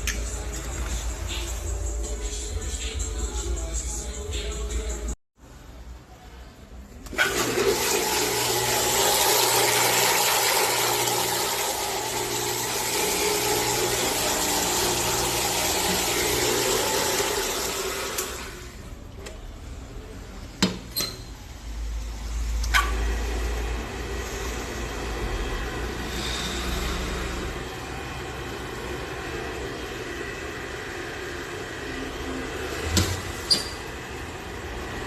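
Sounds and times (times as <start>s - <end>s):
blender motor hum: 7.1s - 18.7s.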